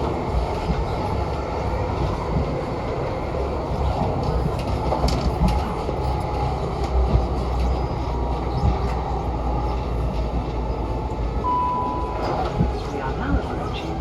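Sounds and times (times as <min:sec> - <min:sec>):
train running rumble: 0:00.0 - 0:14.0.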